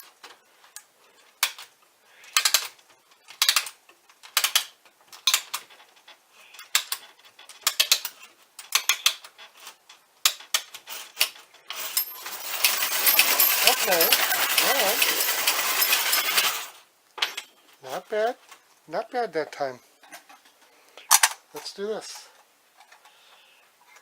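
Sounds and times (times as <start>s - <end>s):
wind-up toy ratchet clicks: 2.3s - 2.7s, 10.3s - 16.7s.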